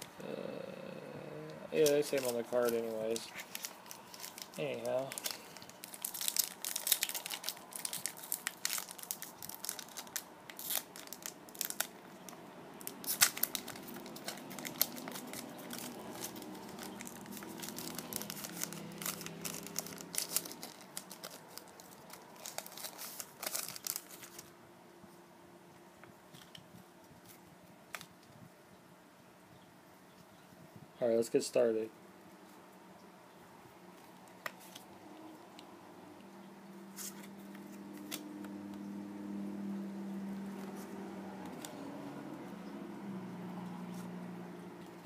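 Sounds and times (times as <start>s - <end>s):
foil wrapper crinkling and tearing: 1.8s - 24.5s, 36.9s - 38.4s.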